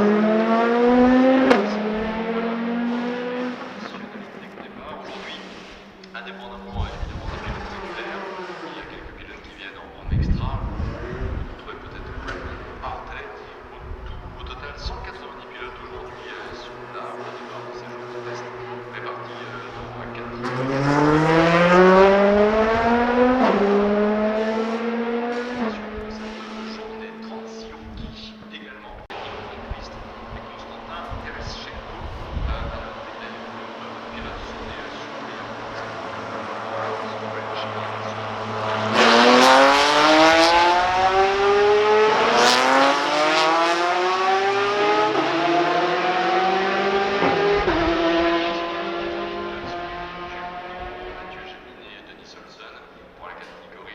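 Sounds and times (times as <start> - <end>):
race car engine accelerating: 0.0 - 53.9
sharp exhaust cracks: 2.8 - 9.8.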